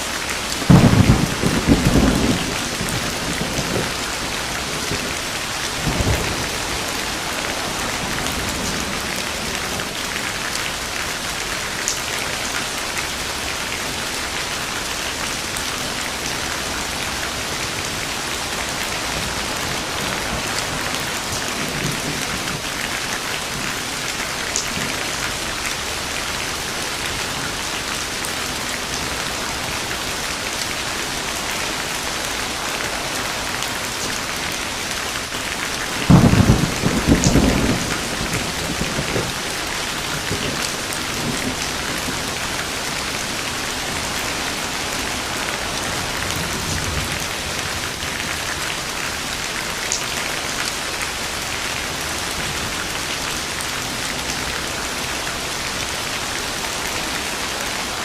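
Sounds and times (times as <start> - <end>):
heavy rain falling: 0.0 - 58.0
thunder clap with rumble: 0.6 - 10.3, 16.1 - 23.7, 35.8 - 48.5.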